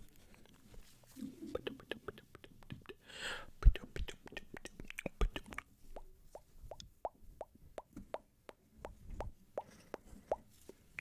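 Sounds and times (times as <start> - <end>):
wet tongue and lip clicks: 3.6 - 11.0.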